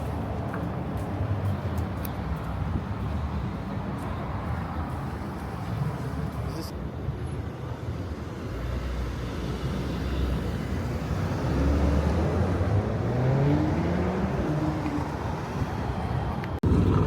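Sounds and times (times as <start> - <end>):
road noise: 0.0 - 17.0
car engine: 8.7 - 17.0.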